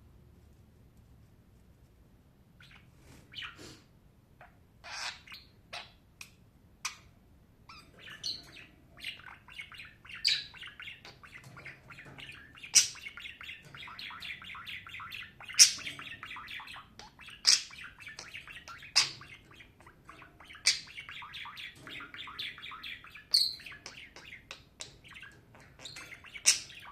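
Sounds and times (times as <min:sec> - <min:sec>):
budgerigar warbling: 0:04.8 - 0:05.9
sharp bird chirps: 0:07.7 - 0:26.9.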